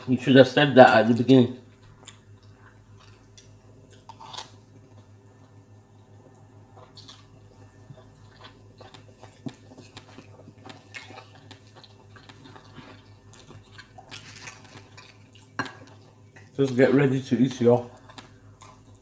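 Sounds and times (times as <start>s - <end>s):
close chewing: 6.2s - 16.7s, 17.8s - 19.0s.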